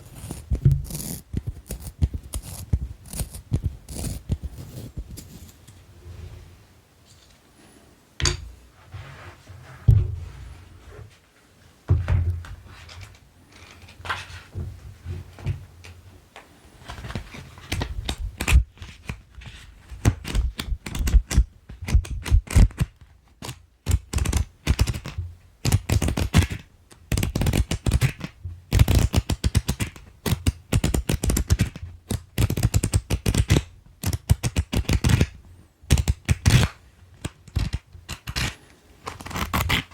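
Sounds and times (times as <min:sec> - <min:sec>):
soft thumps: 0:09.8 - 0:10.8.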